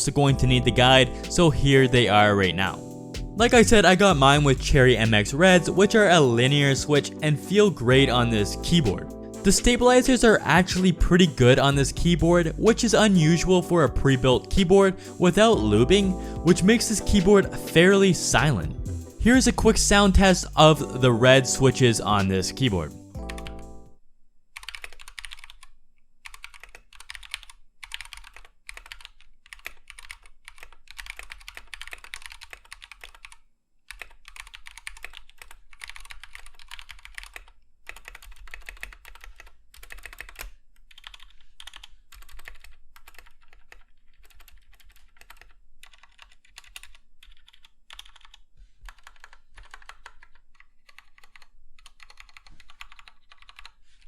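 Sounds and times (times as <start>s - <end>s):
mechanical keyboard typing: 20.2s - 23.7s, 24.6s - 54.0s.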